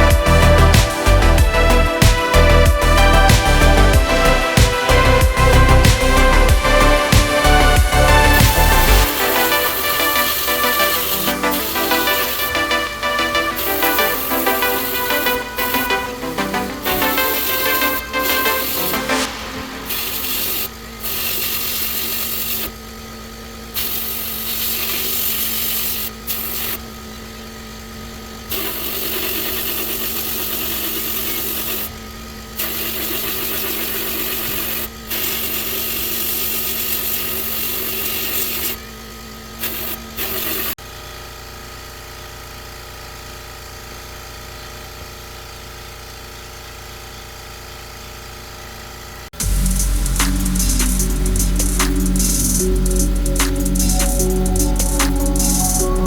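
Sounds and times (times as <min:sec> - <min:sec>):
loud hiss: 0:00.0 - 0:22.8, 0:28.5 - 0:32.0, 0:32.6 - 0:38.8, 0:49.4 - 0:56.0
machine humming: 0:00.0 - 0:23.9, 0:49.4 - 0:56.0.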